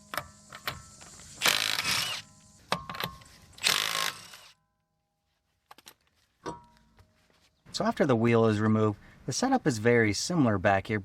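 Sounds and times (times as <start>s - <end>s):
impact wrench spinning lug nuts: 0.1s - 4.6s.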